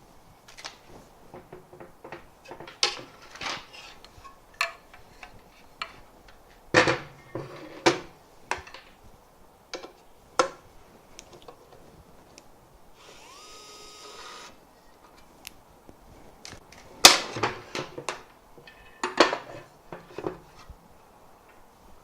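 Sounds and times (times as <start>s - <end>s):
small motor whining: 13.0s - 14.6s.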